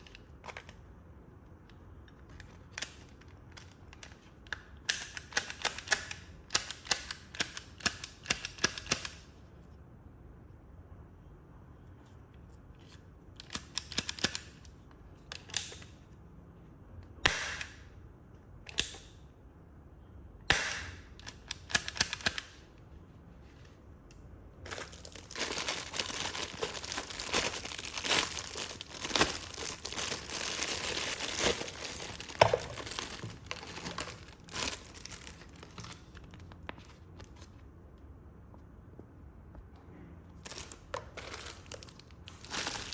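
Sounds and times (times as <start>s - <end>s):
plastic packaging crinkling: 24.6s - 37.6s, 40.4s - 42.9s.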